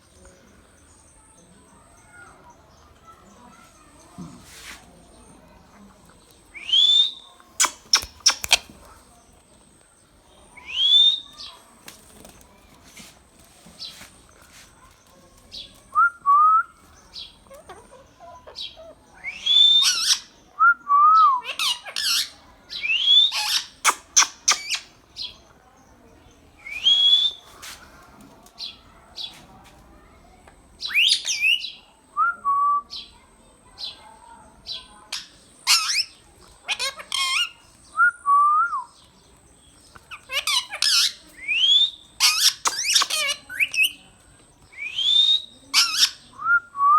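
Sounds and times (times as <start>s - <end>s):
parakeet clicks: 7.6s - 8.8s, 42.6s - 43.3s
parakeet whistling and calling: 40.3s - 44.0s, 44.9s - 46.2s.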